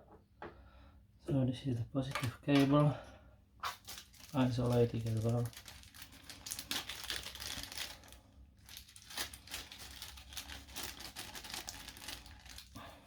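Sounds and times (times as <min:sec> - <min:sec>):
plastic crinkling: 0:03.6 - 0:13.0.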